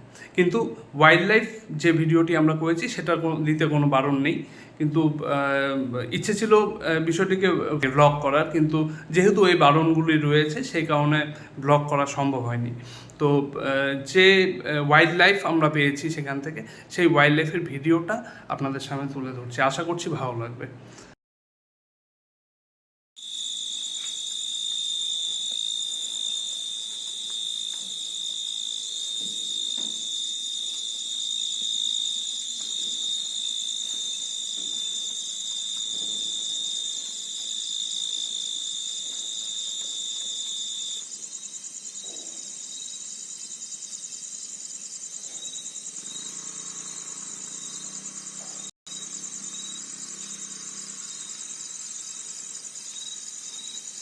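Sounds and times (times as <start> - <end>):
insect chorus trilling: 23.2 - 54.0.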